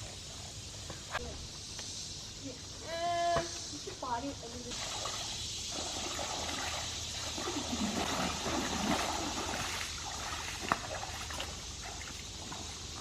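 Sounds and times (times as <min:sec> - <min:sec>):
creek water trickling: 0:03.8 - 0:13.0.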